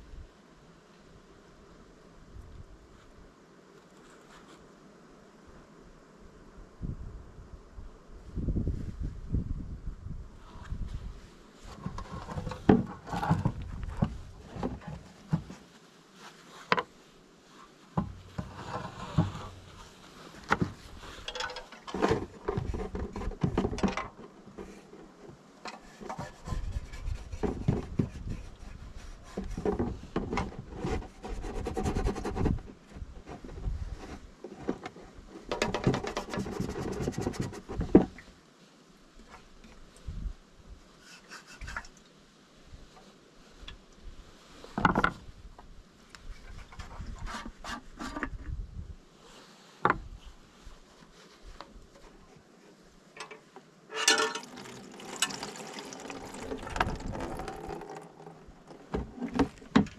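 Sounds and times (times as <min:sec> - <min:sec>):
scraping and rubbing: 0:17.6 - 0:38.0, 0:46.2 - 0:48.4, 0:53.9 - 0:59.9.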